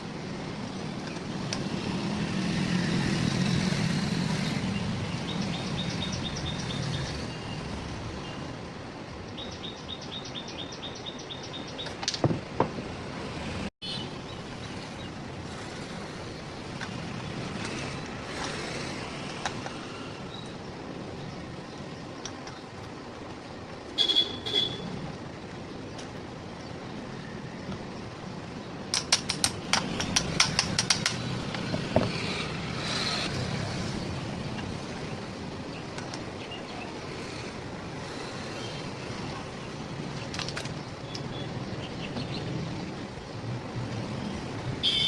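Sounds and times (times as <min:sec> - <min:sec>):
road traffic noise: 0:00.0 - 0:45.0
vehicle passing: 0:29.8 - 0:35.7.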